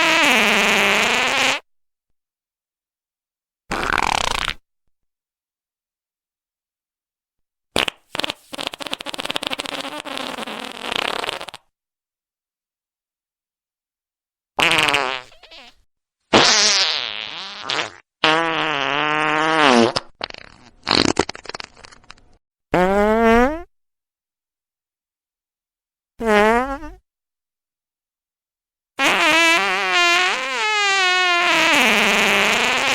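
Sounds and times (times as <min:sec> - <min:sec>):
farts: 0:00.0 - 0:01.7, 0:03.7 - 0:04.6, 0:07.8 - 0:11.7, 0:14.6 - 0:23.7, 0:26.2 - 0:27.0, 0:29.0 - 0:32.9.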